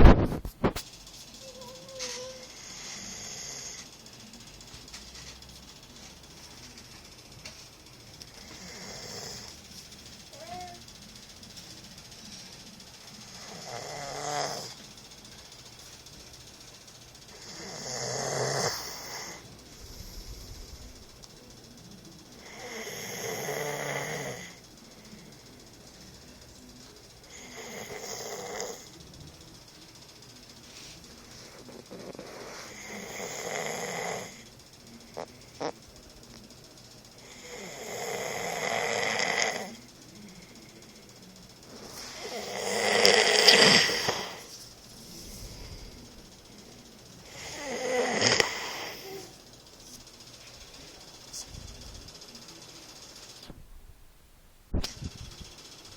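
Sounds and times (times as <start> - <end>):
quiet breathing: 2.4 - 5.5, 17.2 - 29.4, 30.0 - 52.6
man snoring: 8.4 - 9.6, 13.3 - 14.8, 17.3 - 20.8, 22.4 - 24.6, 27.3 - 28.9, 32.7 - 34.4, 37.2 - 39.8, 42.1 - 44.5, 47.2 - 49.3.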